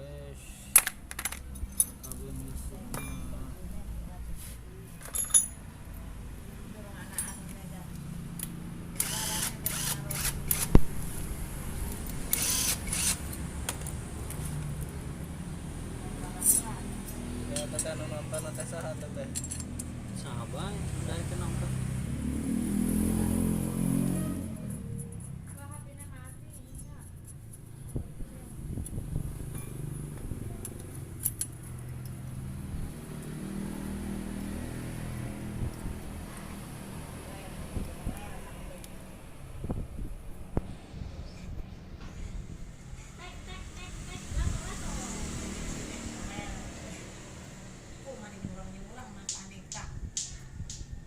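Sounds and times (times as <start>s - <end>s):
metallic clinks of tools: 1.2s - 2.2s, 2.9s - 3.3s, 5.0s - 5.6s, 19.2s - 20.0s.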